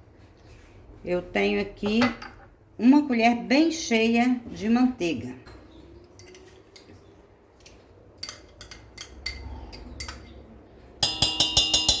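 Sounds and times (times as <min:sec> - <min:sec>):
metal spoon clinking against bowl: 0:08.2 - 0:10.4, 0:11.0 - 0:12.0.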